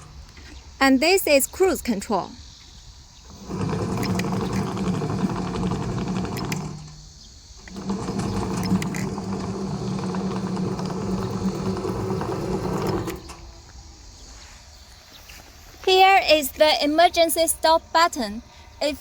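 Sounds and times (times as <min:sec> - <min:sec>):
robot motors buzzing hum: 0:03.2 - 0:14.3.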